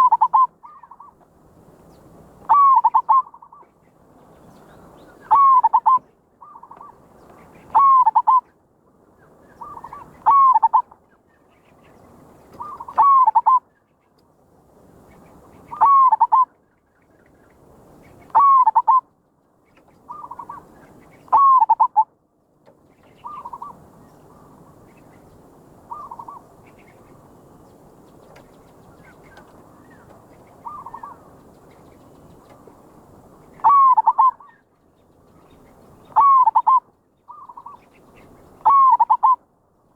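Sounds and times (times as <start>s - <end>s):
dove cooing: 0.0s - 1.2s, 2.4s - 3.7s, 5.2s - 7.0s, 7.7s - 8.4s, 9.6s - 11.0s, 12.5s - 13.6s, 15.7s - 16.5s, 18.3s - 19.0s, 20.1s - 22.1s, 23.2s - 23.8s, 25.9s - 26.4s, 30.6s - 31.3s, 33.6s - 34.6s, 36.1s - 37.8s, 38.6s - 39.4s
faint dove coos: 0.0s - 1.2s, 2.4s - 3.7s, 5.2s - 7.0s, 7.7s - 8.4s, 9.5s - 11.0s, 12.6s - 13.6s, 15.7s - 16.5s, 18.3s - 19.0s, 20.1s - 22.1s, 25.9s - 26.4s, 30.6s - 31.2s, 33.6s - 34.6s, 36.1s - 37.8s, 38.6s - 39.4s.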